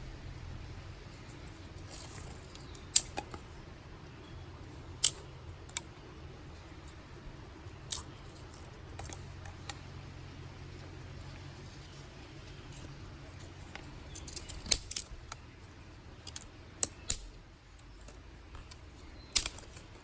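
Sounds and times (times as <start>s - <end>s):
sticks snapping: 5.0s - 6.0s, 13.7s - 15.5s, 16.2s - 17.4s, 18.0s - 20.0s.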